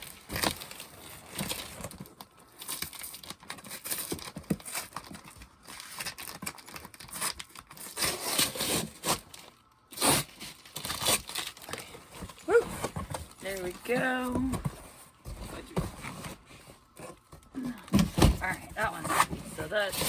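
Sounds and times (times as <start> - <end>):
packaging tearing and crinkling: 0.0 - 13.4.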